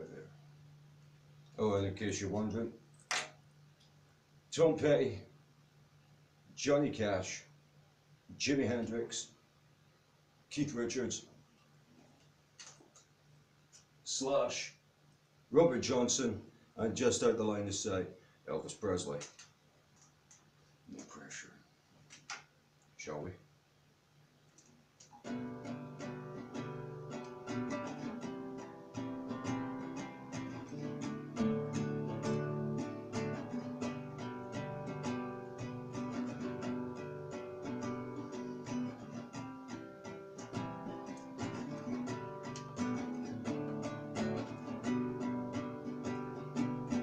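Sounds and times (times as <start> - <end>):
guitar strumming chords: 25.2 - 47.0.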